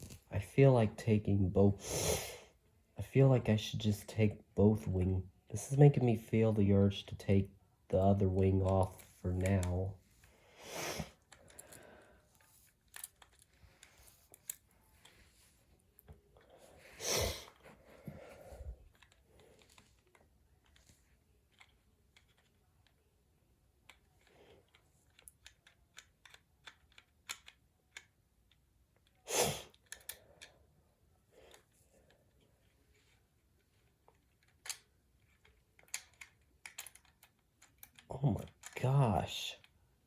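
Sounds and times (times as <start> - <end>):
plastic parts clicking: 12.7 - 15.2, 18.9 - 20.9, 23.8 - 30.5, 34.0 - 38.8.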